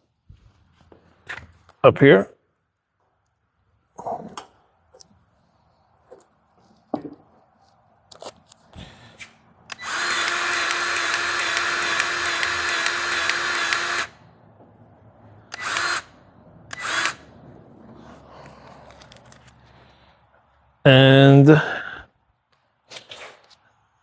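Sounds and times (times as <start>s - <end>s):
grease gun motor whining: 9.7s - 14.2s, 15.5s - 16.1s, 16.7s - 17.3s.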